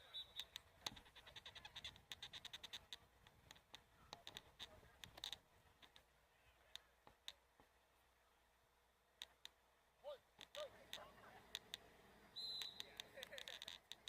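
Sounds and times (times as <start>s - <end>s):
faint sharp clicks: 0.4s - 6.1s, 10.4s - 11.9s, 12.5s - 14.0s.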